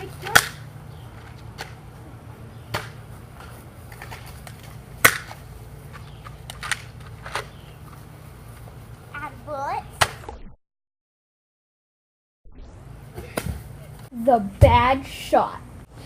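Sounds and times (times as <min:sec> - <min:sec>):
low hum: 0:12.4 - 0:14.1.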